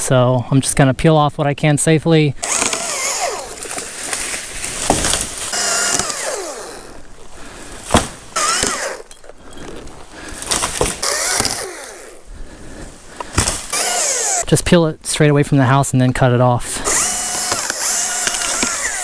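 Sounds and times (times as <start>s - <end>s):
chainsaw revving: 2.4s - 4.2s, 4.9s - 7.1s, 8.2s - 9.1s, 10.4s - 12.3s, 13.2s - 14.5s, 16.8s - 19.0s
tree limbs cracking: 2.4s - 14.5s, 16.8s - 19.0s.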